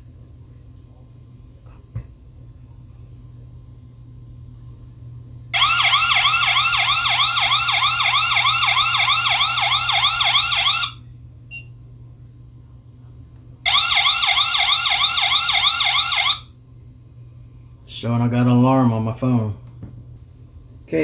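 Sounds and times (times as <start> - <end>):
warbling electronic siren: 5.6 - 11.0, 13.7 - 16.5.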